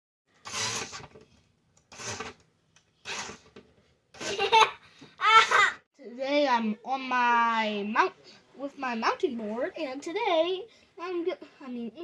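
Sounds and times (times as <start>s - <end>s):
child giggling: 4.2s - 5.8s.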